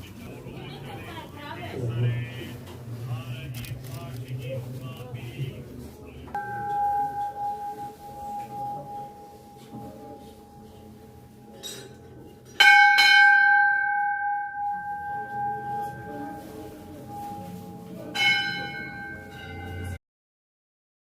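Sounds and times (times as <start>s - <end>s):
metal bell ringing: 6.4s - 10.9s, 11.5s - 20.0s.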